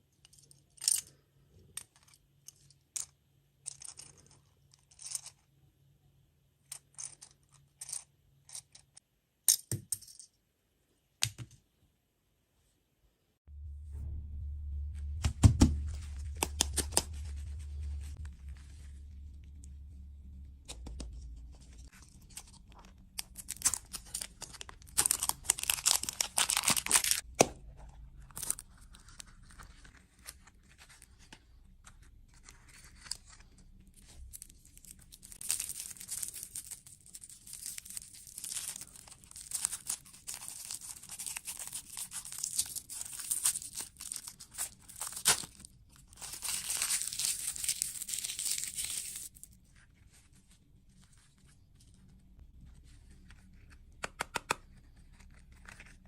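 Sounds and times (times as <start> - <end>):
snack packaging tearing and crinkling: 21.9 - 27.3, 28.2 - 30.4, 32.7 - 49.6.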